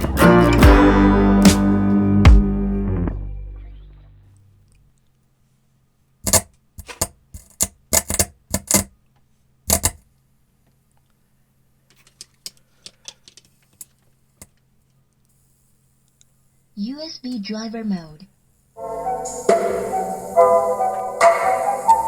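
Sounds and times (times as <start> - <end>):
sharp clicks and knocks: 6.3 - 8.9, 9.7 - 10.0.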